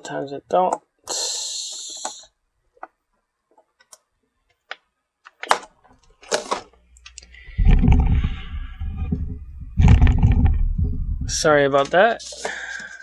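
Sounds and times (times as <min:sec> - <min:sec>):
low rumble of handling noise: 0:07.4 - 0:11.7.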